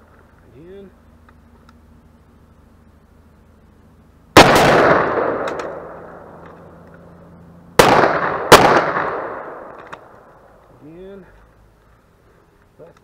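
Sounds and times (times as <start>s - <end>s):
gunshots with echoing tail: 4.4s - 6.4s, 7.8s - 10.3s.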